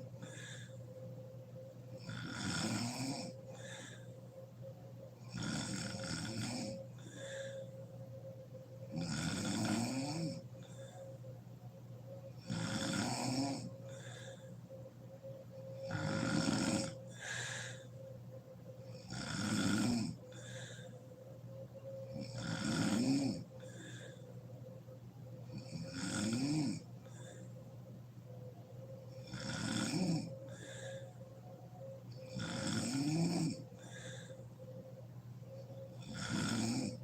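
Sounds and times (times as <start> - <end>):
woman snoring loudly: 1.9 - 4.0, 5.2 - 7.5, 8.8 - 10.9, 12.4 - 14.4, 15.8 - 17.9, 18.8 - 20.9, 22.0 - 24.1, 25.5 - 27.4, 29.1 - 31.0, 32.2 - 34.3, 35.9 - 37.0.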